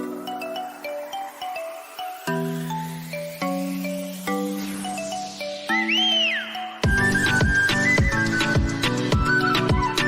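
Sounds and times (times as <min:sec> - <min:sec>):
high gliding whistle-like line: 0:00.0 - 0:10.0.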